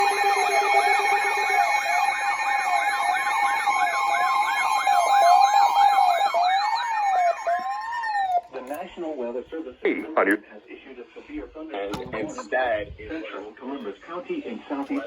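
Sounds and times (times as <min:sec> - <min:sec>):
siren fast yelp: 0:00.0 - 0:08.8
siren slow wail: 0:00.0 - 0:08.8
steady siren tones: 0:00.0 - 0:09.0.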